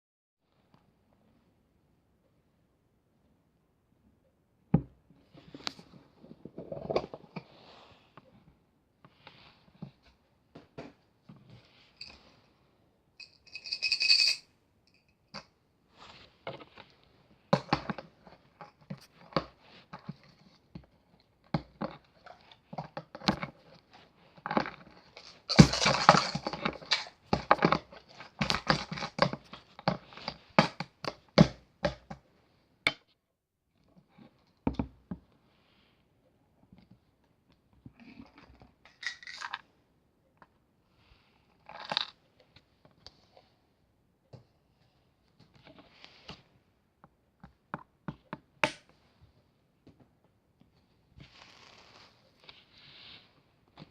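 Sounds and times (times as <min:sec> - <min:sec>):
small objects clicking and rustling: 0:24.5 - 0:30.8.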